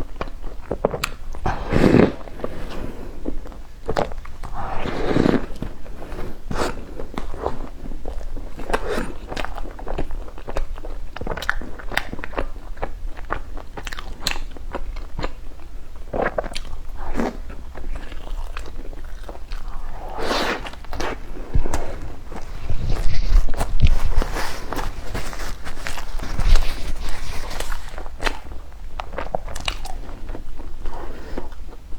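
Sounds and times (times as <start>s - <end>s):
crunching and chewing: 0.0s - 31.8s.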